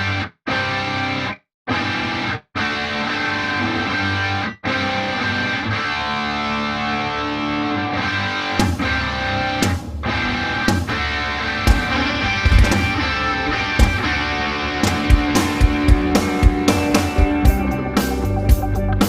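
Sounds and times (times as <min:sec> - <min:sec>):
distorted electric guitar music: 0:00.0 - 0:19.0
sharp hit: 0:08.5 - 0:17.6.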